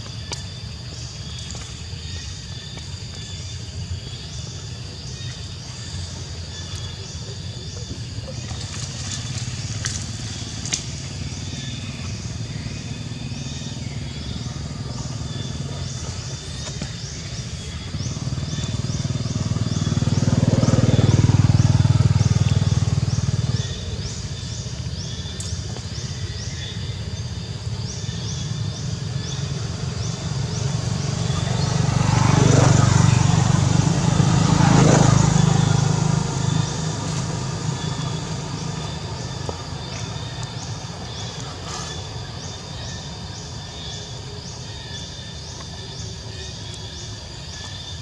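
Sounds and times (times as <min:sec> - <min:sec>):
motor vehicle engine passing: 0:08.1 - 0:25.3, 0:26.0 - 0:47.6.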